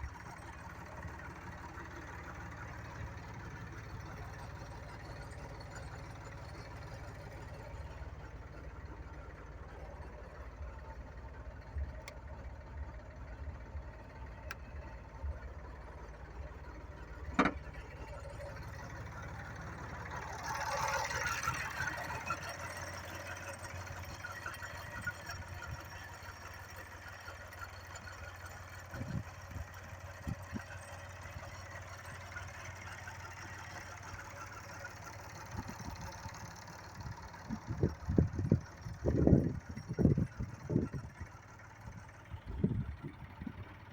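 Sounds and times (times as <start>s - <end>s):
tractor diesel engine idling: 0.0s - 43.9s.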